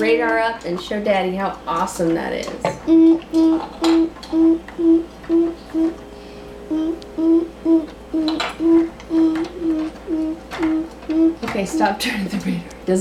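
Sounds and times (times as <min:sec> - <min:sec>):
child humming: 0:02.8 - 0:06.0, 0:06.7 - 0:12.0.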